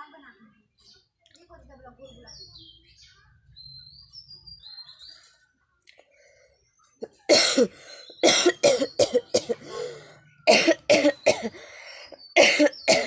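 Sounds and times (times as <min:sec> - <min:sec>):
person coughing: 0:07.1 - 0:09.8, 0:10.5 - 0:11.6, 0:12.4 - 0:13.0.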